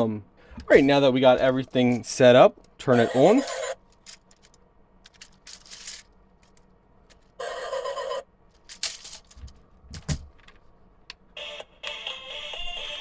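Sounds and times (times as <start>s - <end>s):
toy electronic music: 2.9s - 3.8s, 11.4s - 13.0s.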